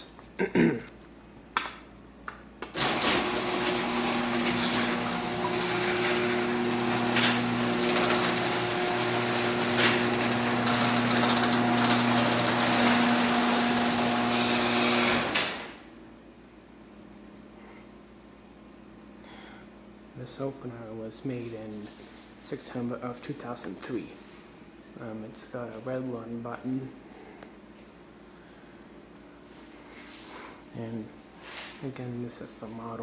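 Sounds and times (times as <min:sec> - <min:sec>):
garage door opener clicks: 0:02.6 - 0:15.8
garage door opener motor humming: 0:02.6 - 0:15.8.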